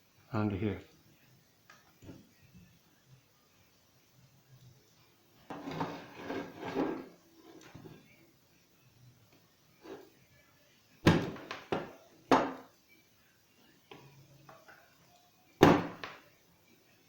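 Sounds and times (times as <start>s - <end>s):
hard objects knocking: 5.5s - 7.0s, 11.1s - 12.6s.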